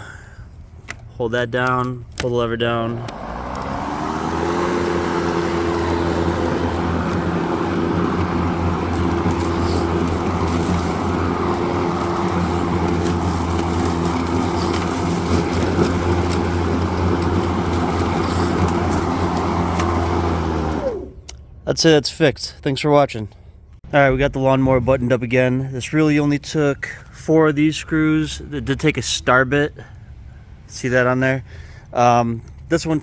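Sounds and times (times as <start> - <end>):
electric lawnmower humming: 2.8 - 21.2.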